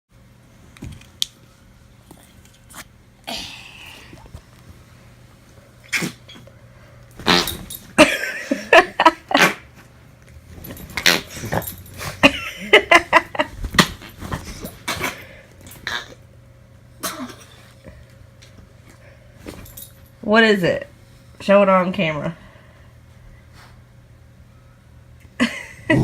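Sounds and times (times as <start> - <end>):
noise putty fart noises: 5.8 - 6.4, 7.2 - 7.8, 9.3 - 9.7, 11.0 - 11.6.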